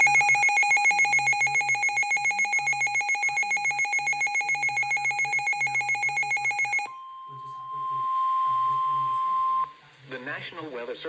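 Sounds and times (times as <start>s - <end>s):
rapidly pulsing electronic beep: 0.0s - 7.0s.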